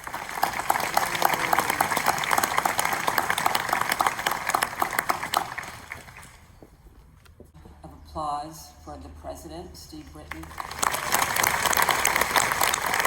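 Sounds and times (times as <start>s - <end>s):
audience applauding: 0.0s - 6.5s, 10.3s - 13.0s.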